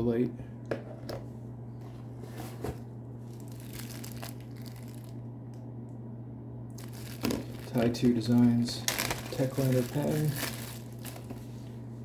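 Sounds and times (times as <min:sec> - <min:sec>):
low hum: 0:00.0 - 0:12.0
packaging crinkling: 0:03.2 - 0:05.2, 0:06.7 - 0:11.7.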